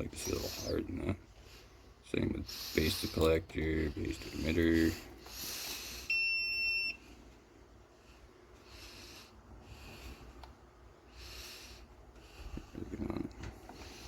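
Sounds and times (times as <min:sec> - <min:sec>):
soft breaths: 0:00.1 - 0:06.2, 0:06.9 - 0:14.0
multimeter beep: 0:06.0 - 0:07.0.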